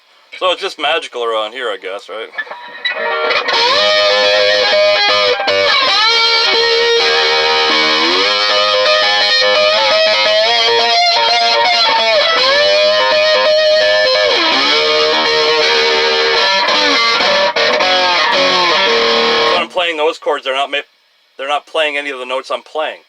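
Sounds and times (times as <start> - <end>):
electric guitar chords: 2.3 - 19.7.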